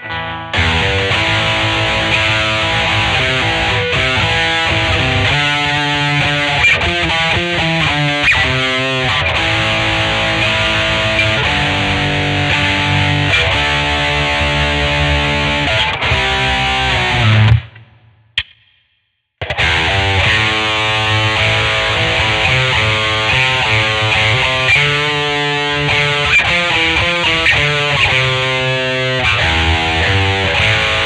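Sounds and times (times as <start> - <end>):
distorted electric guitar: 0.0 - 18.5, 19.4 - 31.0.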